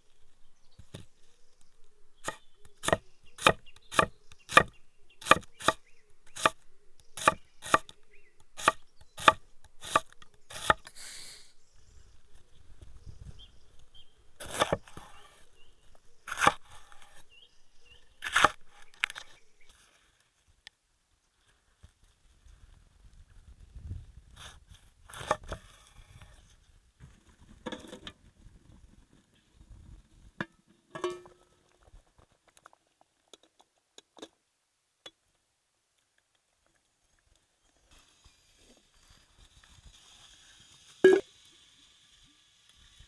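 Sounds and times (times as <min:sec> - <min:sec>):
short rasping strokes on food: 0:08.6 - 0:11.5.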